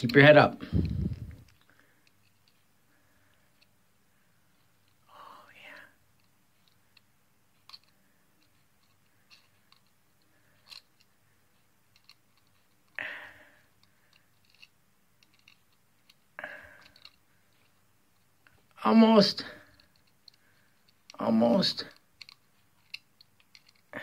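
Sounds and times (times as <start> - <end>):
small metal clicks: 6.1 - 11.1, 11.9 - 13.0, 13.7 - 17.8, 21.8 - 24.0
short breaths: 12.9 - 14.3, 16.4 - 17.2.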